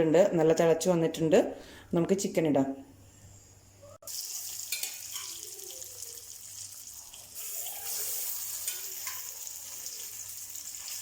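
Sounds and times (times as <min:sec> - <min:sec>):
chicken sizzling in hot oil: 0:04.1 - 0:11.0.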